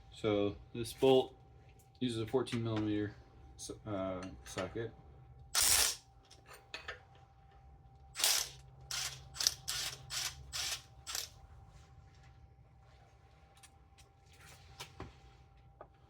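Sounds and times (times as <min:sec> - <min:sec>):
ratchet wrench clicking: 0:05.6 - 0:06.0, 0:08.2 - 0:11.3.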